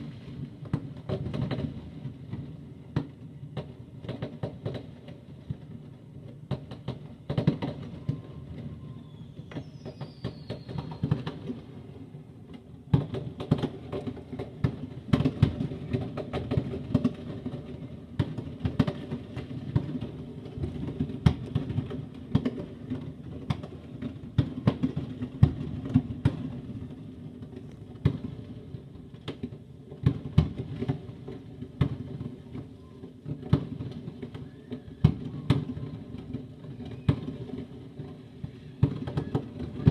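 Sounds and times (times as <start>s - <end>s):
fireworks bangs and cracks: 0.0s - 39.9s
falling whistle: 8.8s - 11.1s.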